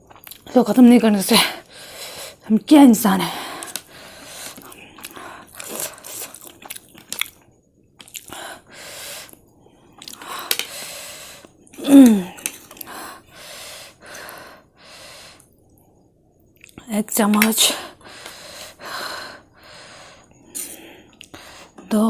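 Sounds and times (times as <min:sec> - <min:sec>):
person chewing: 0:00.0 - 0:00.5, 0:03.5 - 0:13.4.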